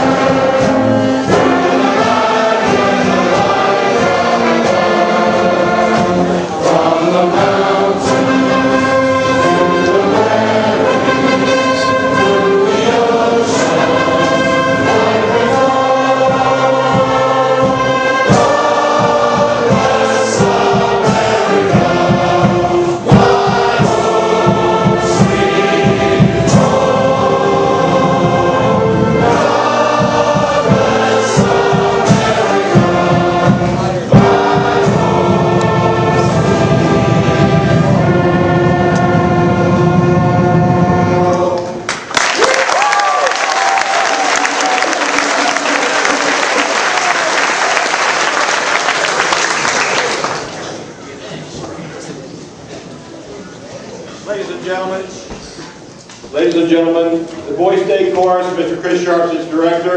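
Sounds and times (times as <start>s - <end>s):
band with brass playing: 0.0s - 41.9s
young men's choir singing: 0.0s - 42.0s.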